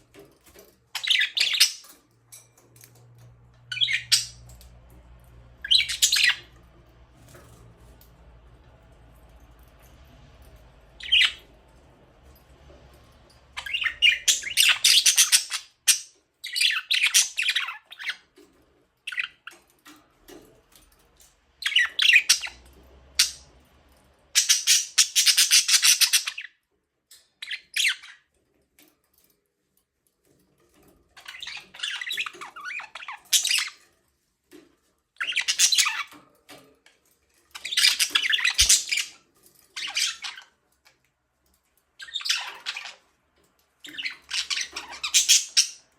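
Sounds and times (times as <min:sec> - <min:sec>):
budgerigars chirping and chattering: 0:00.9 - 0:01.9, 0:03.0 - 0:08.0, 0:10.8 - 0:11.6, 0:13.5 - 0:18.4, 0:19.1 - 0:19.6, 0:21.6 - 0:23.6, 0:24.3 - 0:26.5, 0:27.2 - 0:28.2, 0:31.2 - 0:33.8, 0:35.2 - 0:36.2, 0:37.6 - 0:40.6, 0:42.0 - 0:43.1, 0:43.8 - 0:45.9.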